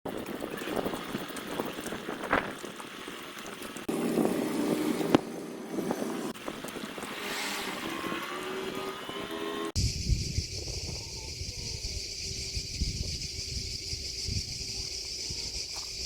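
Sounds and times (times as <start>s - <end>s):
motorboat running: 0.1s - 9.8s
wind buffeting microphone: 0.1s - 16.0s.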